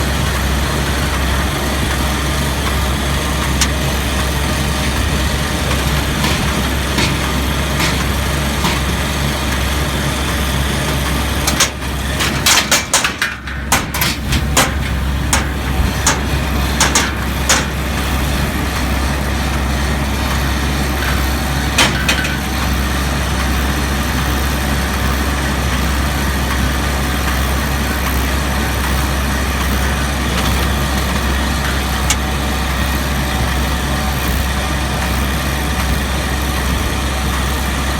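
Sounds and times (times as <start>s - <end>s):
tractor engine droning: 0.0s - 37.9s
sharp irregular clacks: 5.6s - 9.4s, 11.5s - 18.1s.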